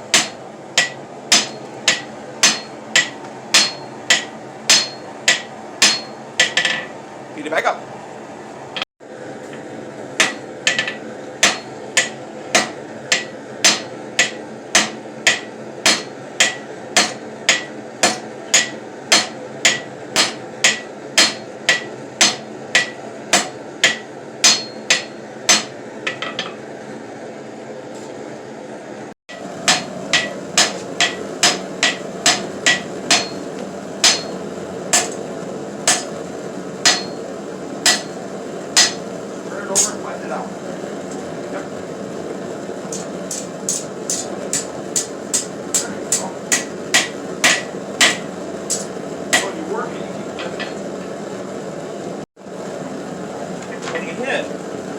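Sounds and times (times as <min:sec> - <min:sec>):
hammer striking steel on anvil: 0:00.1 - 0:07.0, 0:10.2 - 0:26.6, 0:29.3 - 0:35.2, 0:35.8 - 0:36.2, 0:36.8 - 0:37.2, 0:37.8 - 0:38.2, 0:38.8 - 0:39.0, 0:42.9 - 0:49.6, 0:50.4 - 0:50.9.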